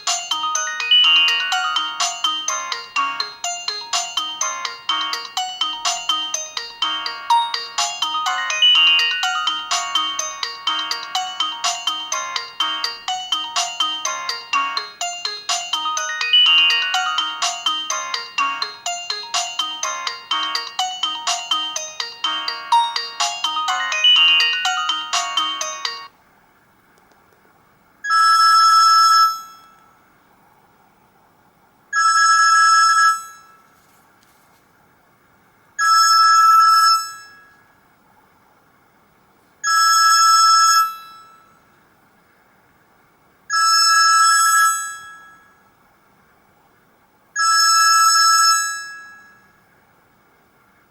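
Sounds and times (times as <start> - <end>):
fast ringtone melody: 0.0 - 26.1
two-tone phone ring: 0.0 - 26.1, 28.1 - 29.8, 32.0 - 33.6, 43.5 - 45.6, 47.4 - 49.5.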